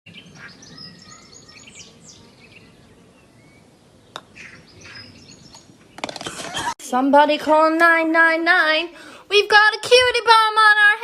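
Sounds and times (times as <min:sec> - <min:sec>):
small birds chirping: 0:00.1 - 0:06.6.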